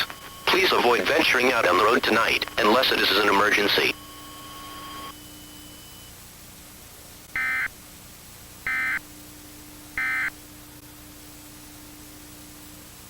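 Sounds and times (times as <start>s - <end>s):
steady hiss: 0.0s - 5.2s
faint hum: 0.0s - 13.0s.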